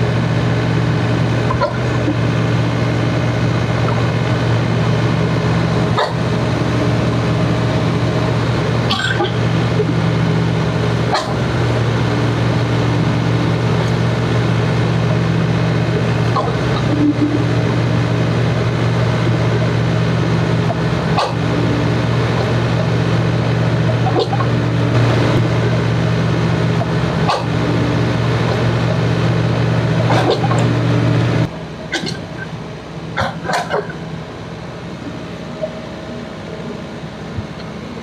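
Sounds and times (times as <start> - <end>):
excavator diesel engine running: 0.0 - 38.0
dog barking: 5.9 - 6.2, 11.1 - 11.4, 21.1 - 21.5, 27.2 - 27.6.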